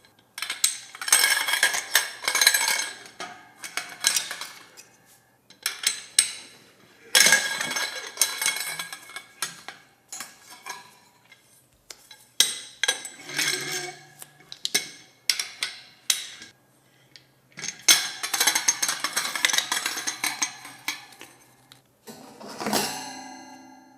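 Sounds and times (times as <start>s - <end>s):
metal poles clinking: 7.2s - 16.6s.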